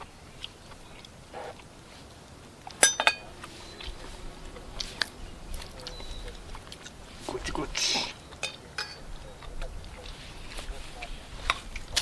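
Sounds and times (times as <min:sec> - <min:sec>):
metal cookware clinking: 0:02.7 - 0:03.8, 0:07.8 - 0:09.9.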